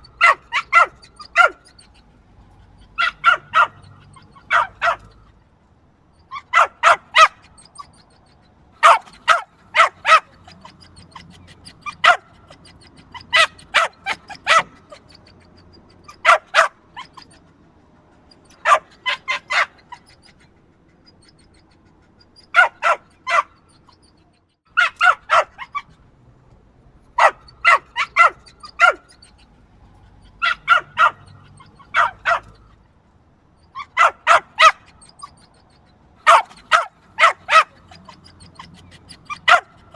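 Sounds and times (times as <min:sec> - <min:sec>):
small dog barking: 0:00.0 - 0:02.0, 0:02.8 - 0:05.3, 0:06.3 - 0:08.2, 0:08.8 - 0:17.4, 0:18.4 - 0:20.4, 0:22.4 - 0:24.0, 0:24.7 - 0:26.0, 0:27.2 - 0:29.4, 0:30.3 - 0:32.7, 0:33.7 - 0:35.5, 0:36.2 - 0:39.9.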